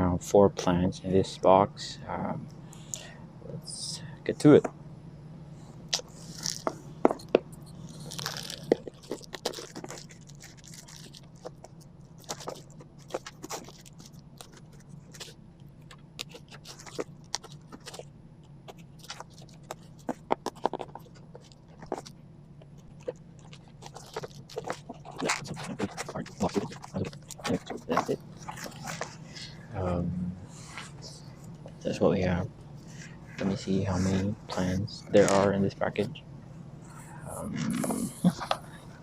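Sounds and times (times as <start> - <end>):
low steady hum: 0.0 - 39.0
cardboard and packing crunching: 6.3 - 15.4, 23.0 - 29.5.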